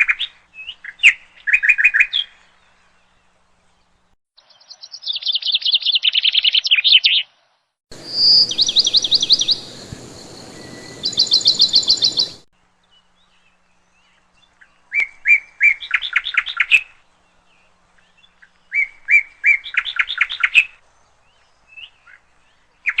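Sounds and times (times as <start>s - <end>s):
songbird singing high trill: 4.4s - 7.3s, 7.9s - 23.0s.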